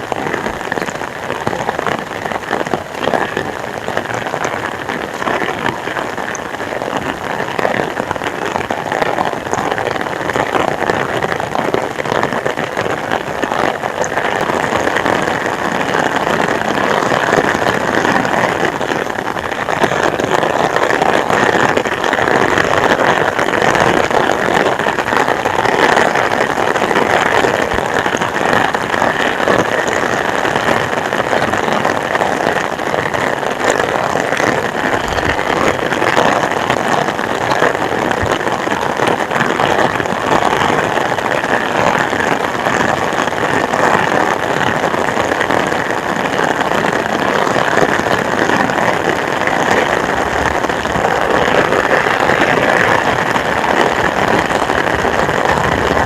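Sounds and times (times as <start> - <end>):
heavy rain pouring: 0.0 - 56.0.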